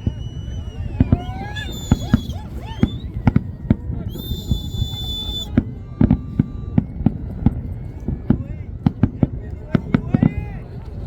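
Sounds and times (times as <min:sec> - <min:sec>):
fireworks bangs: 0:00.0 - 0:10.4
high steady whistle: 0:00.0 - 0:10.6.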